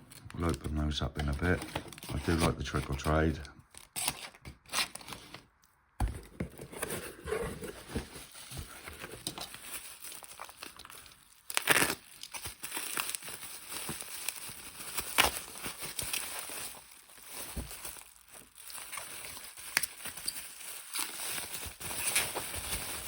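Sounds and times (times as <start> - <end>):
packaging crinkling: 6.6 - 23.0.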